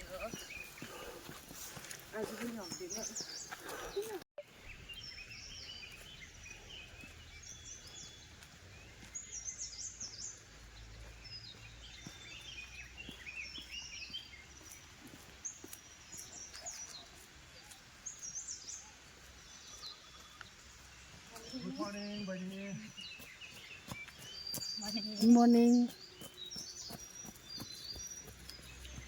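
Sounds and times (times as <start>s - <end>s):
small birds chirping: 0.0s - 29.0s.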